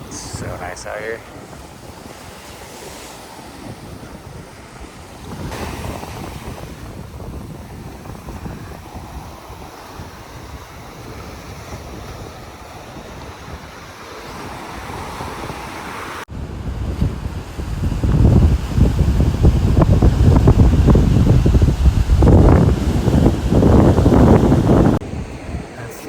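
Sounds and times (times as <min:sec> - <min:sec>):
surf washing on rocky beach: 0:00.0 - 0:26.0
wind buffeting microphone: 0:00.0 - 0:26.0.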